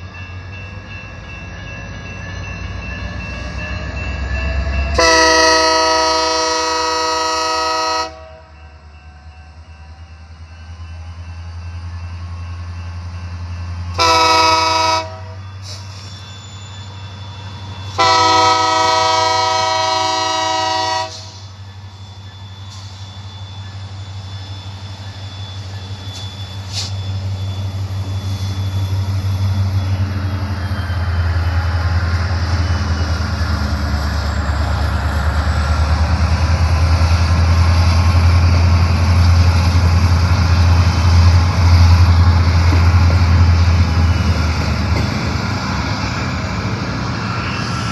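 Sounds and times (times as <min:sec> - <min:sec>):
locomotive engine rumbling: 0:00.0 - 0:47.9
locomotive air horn blasts: 0:05.0 - 0:08.5, 0:14.0 - 0:15.4, 0:18.0 - 0:21.4.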